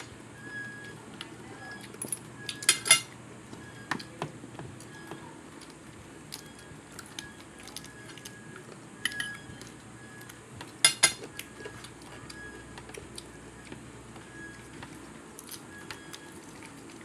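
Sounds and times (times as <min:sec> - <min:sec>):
cutlery clinking against a plate: 0:02.0 - 0:03.1, 0:09.0 - 0:09.4, 0:10.8 - 0:11.8.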